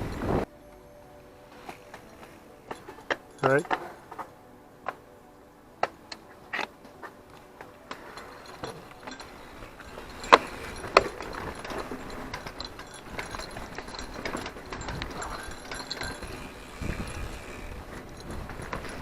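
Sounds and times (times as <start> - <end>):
bike rattling over bumps: 7.8 - 19.0.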